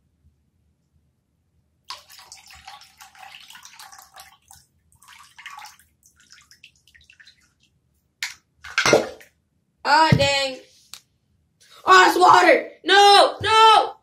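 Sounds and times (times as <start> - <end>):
water running and splashing: 1.9 - 7.7.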